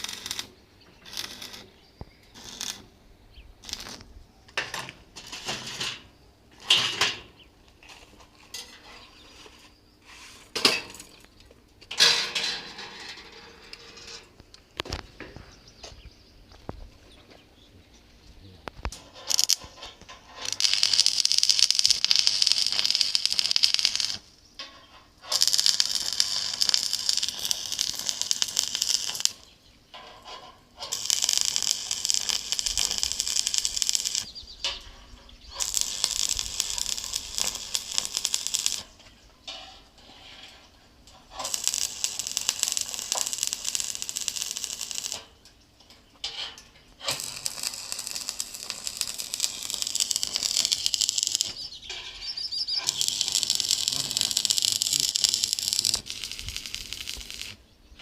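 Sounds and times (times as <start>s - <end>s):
welding arc crackling: 0.0s - 3.0s, 3.6s - 6.8s, 18.8s - 45.4s, 47.0s - 57.6s.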